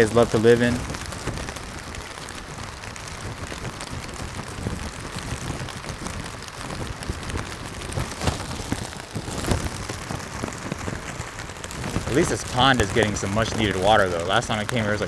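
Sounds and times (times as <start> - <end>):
plastic rain poncho rustling: 0.0 - 15.0
rain drops ticking: 0.0 - 15.0.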